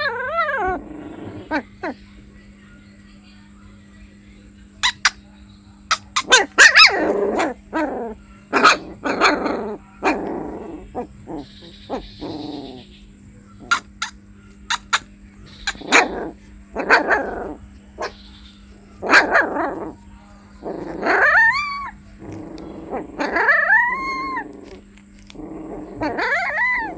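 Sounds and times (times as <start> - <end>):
puppy yelping and whimpering: 0.0 - 2.0, 13.6 - 18.2, 20.6 - 26.9
faint steady hum: 0.0 - 26.9.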